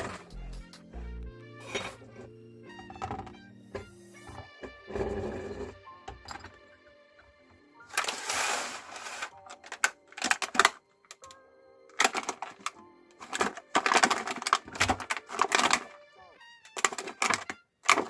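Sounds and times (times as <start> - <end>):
background music: 0.0 - 18.0
meat grinder crunching: 11.9 - 15.9, 16.7 - 18.0.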